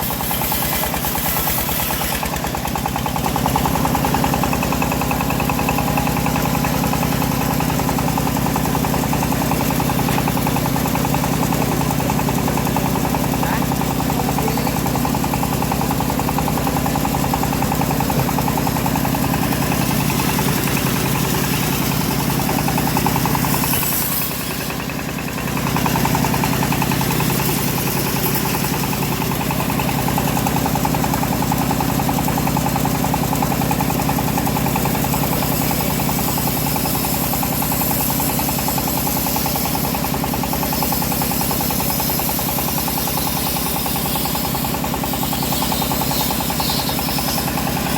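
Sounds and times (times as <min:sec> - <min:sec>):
bandsaw mill engine running: 0:00.0 - 0:47.9.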